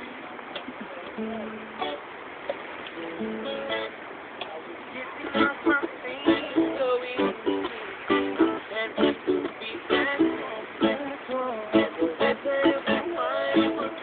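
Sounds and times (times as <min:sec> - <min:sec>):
ukulele strumming: 0:00.0 - 0:14.0.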